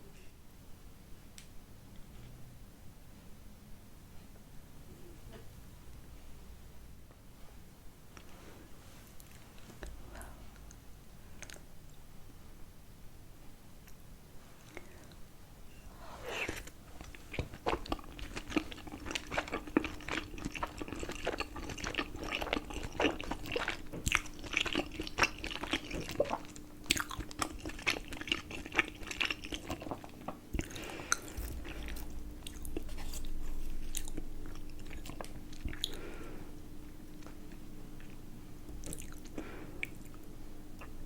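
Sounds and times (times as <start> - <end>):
close chewing and biting: 16.2 - 36.3, 37.0 - 41.0.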